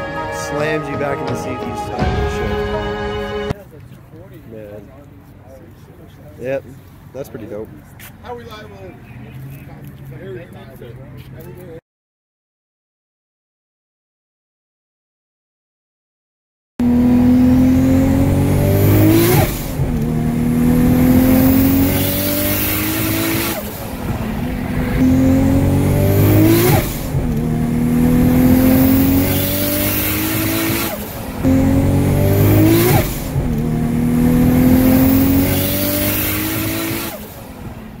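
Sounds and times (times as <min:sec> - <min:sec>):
car engine accelerating hard: 0:16.8 - 0:38.0.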